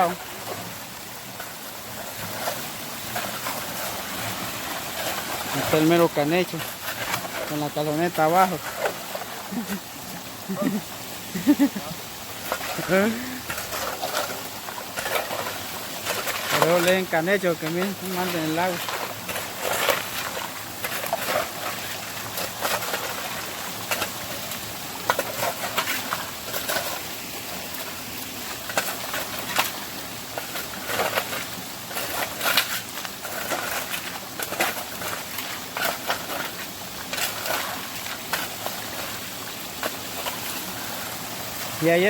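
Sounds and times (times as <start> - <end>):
steady background hiss: 0.0 - 42.0.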